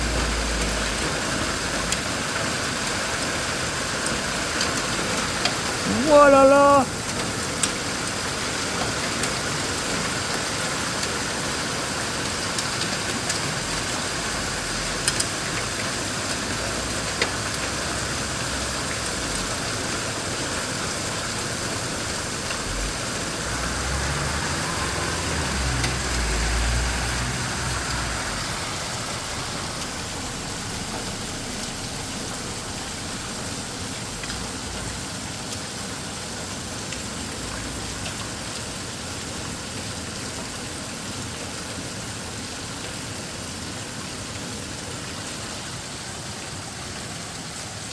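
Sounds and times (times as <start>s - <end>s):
hailstones ticking: 0.0s - 35.8s
heavy rain and hail falling: 0.0s - 47.9s.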